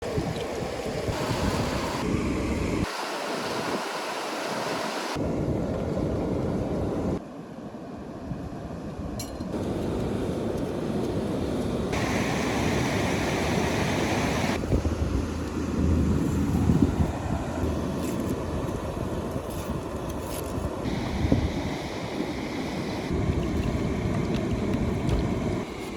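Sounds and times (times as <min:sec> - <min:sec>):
wind on microphone: 0:00.0 - 0:04.0, 0:09.6 - 0:25.9
river rushing: 0:02.8 - 0:05.2, 0:11.9 - 0:14.6.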